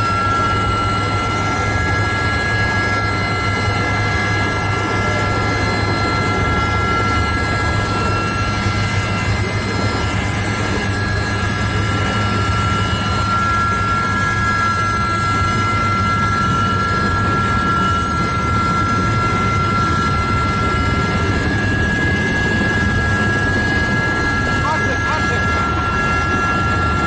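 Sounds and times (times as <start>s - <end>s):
high steady whines: 0.0s - 27.0s
loud mechanical drone: 0.0s - 27.0s.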